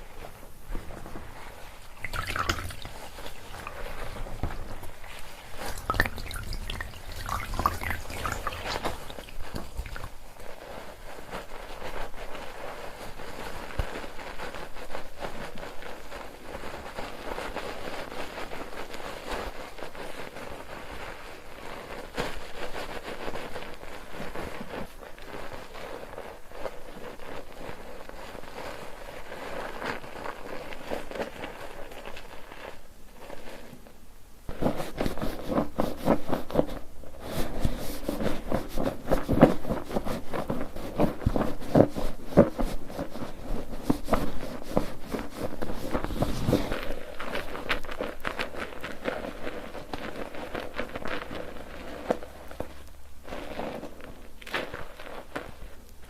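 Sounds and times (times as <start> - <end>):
wet squishing of soap foam: 0.8 - 21.0, 34.6 - 52.7.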